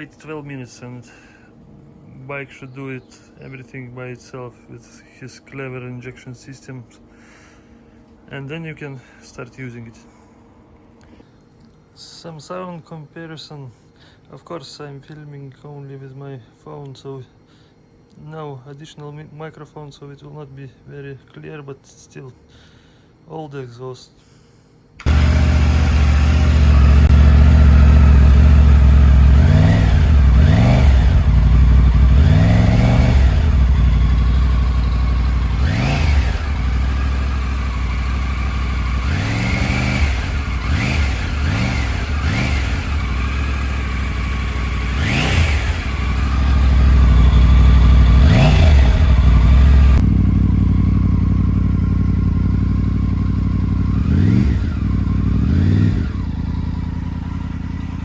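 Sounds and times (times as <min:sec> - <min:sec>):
motorcycle engine revving: 0:25.0 - 0:58.0.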